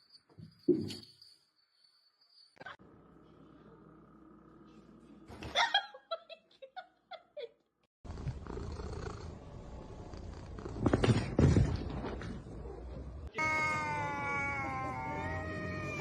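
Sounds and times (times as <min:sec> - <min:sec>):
cat meowing: 0:13.4 - 0:16.0.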